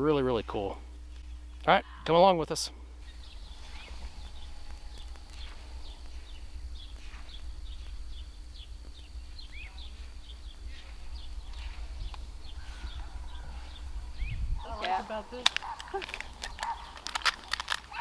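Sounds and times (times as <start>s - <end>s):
small birds chirping: 0.0s - 2.4s, 3.0s - 18.0s
steady high whine: 0.0s - 18.0s
low rumble: 2.8s - 16.4s.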